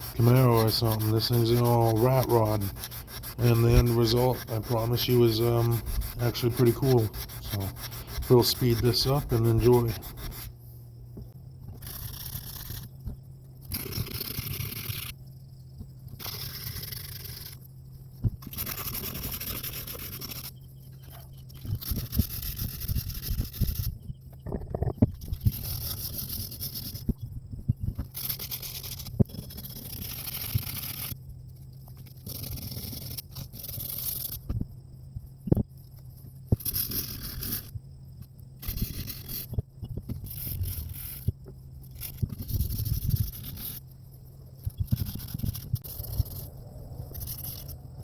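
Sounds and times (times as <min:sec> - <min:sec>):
sandpaper scraping metal: 0:00.0 - 0:10.6, 0:11.8 - 0:12.9, 0:13.7 - 0:15.1, 0:16.2 - 0:17.6, 0:18.4 - 0:20.5, 0:21.8 - 0:23.9, 0:25.3 - 0:27.0, 0:28.1 - 0:31.2, 0:32.1 - 0:34.4, 0:36.6 - 0:37.7, 0:38.6 - 0:39.5, 0:40.2 - 0:43.9, 0:44.7 - 0:46.5, 0:47.1 - 0:47.8.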